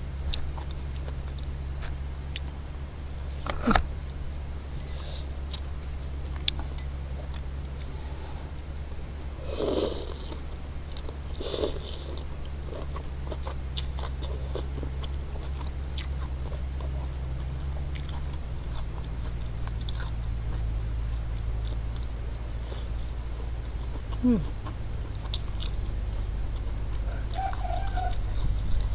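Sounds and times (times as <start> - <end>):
steady low hum: 0.0 - 28.9
chewing noodles: 9.4 - 28.9.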